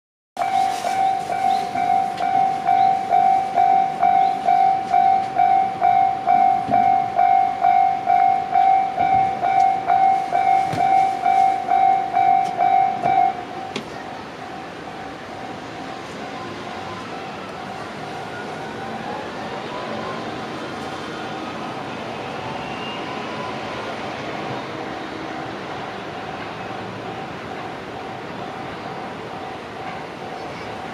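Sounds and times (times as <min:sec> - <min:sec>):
level crossing warning bell: 0:00.4 - 0:20.6.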